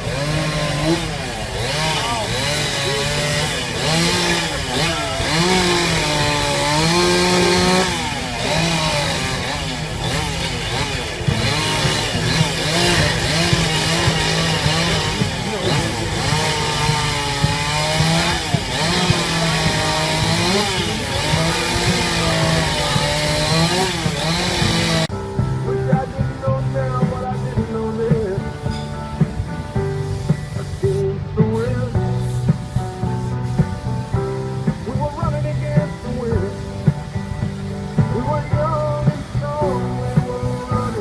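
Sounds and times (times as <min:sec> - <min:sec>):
chainsaw revving while cutting wood: 0:00.0 - 0:25.2.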